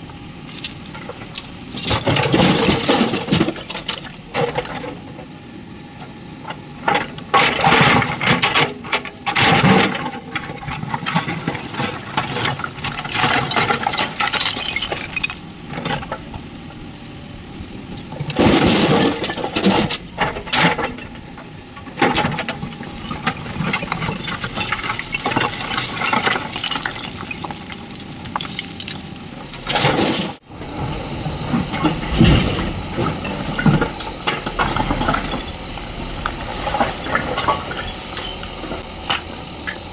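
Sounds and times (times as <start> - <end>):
earth and stones pouring into trolley: 23.0 - 38.6.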